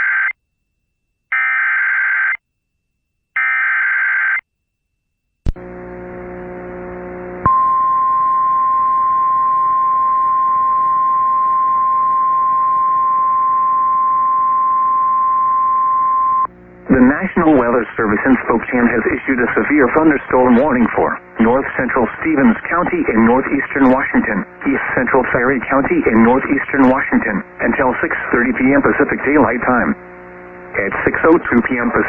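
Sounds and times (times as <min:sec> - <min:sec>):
low buzzing hum: 0:05.5 - 0:32.0
steady high attention tone: 0:07.4 - 0:24.3.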